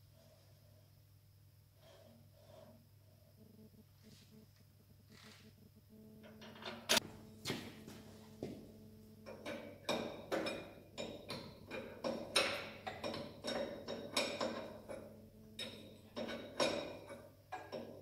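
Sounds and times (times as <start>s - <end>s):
hand tools tapping on steel: 9.2s - 18.0s.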